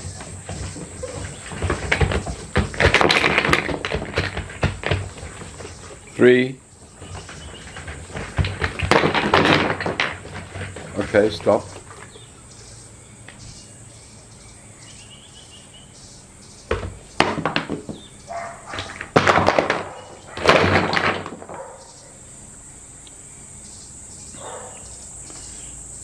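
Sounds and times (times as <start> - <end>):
thud: 0.0 - 6.0, 7.0 - 11.6, 16.7 - 18.1, 18.7 - 21.7
knocking and clattering: 0.0 - 6.1, 7.0 - 12.2, 16.7 - 18.1, 18.7 - 21.7.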